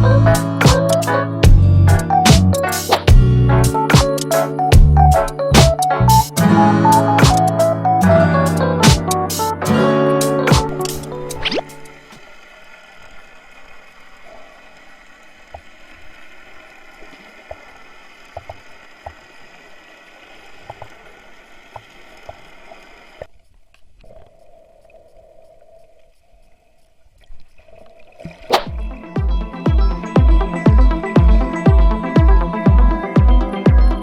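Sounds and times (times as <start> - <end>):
water gurgling and lapping: 10.5 - 30.0.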